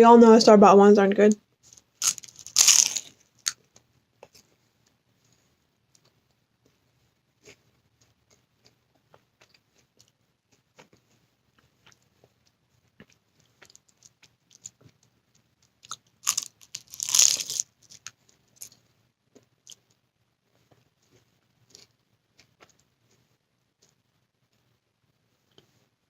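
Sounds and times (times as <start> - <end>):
crunching pastry: 1.6 - 4.6, 7.4 - 24.1.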